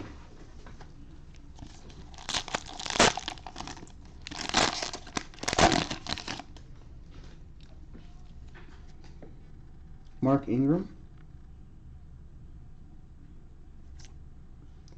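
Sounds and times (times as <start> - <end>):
cellophane crinkling and tearing: 1.5 - 6.6.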